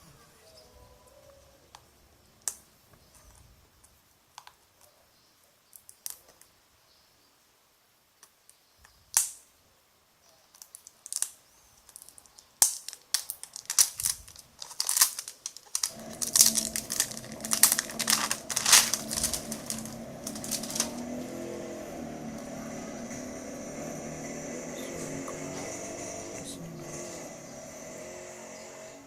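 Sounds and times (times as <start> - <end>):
rustles: 8.1 - 27.5
steady hum with low tones: 15.8 - 28.2.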